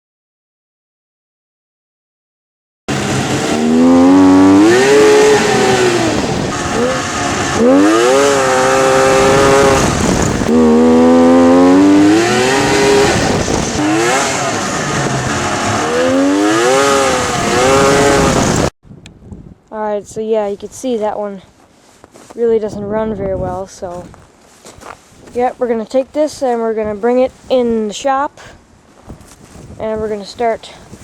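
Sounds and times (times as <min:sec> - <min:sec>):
snowmobile engine revving: 0:02.9 - 0:18.8.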